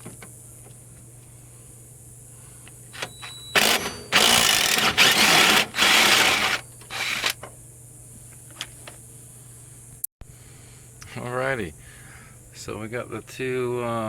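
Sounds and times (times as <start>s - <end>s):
power driver running: 3.0s - 7.4s.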